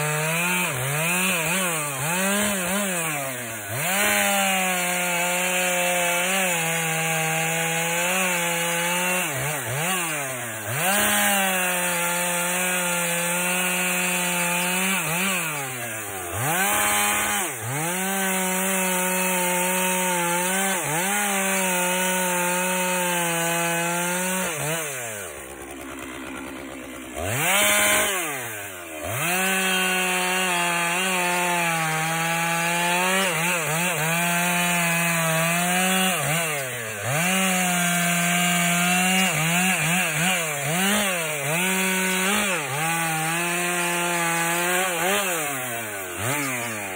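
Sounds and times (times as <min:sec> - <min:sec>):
chainsaw cutting wood: 0:00.0 - 0:46.9.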